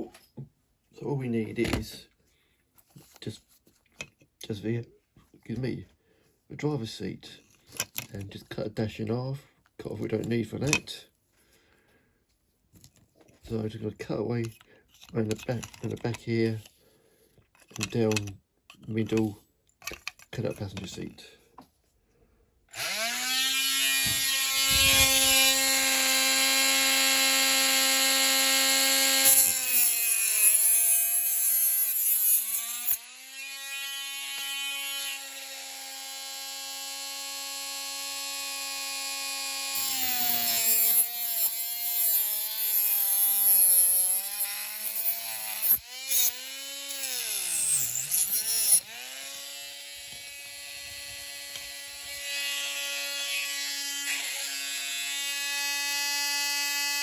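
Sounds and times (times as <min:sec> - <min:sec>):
rotary tool motor whine: 0:22.7 - 0:57.0.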